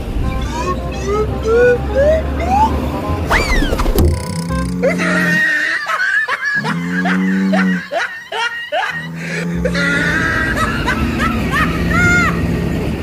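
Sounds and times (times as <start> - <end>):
music: 0.0 - 5.4
snickering laughter sound effect: 4.5 - 12.5.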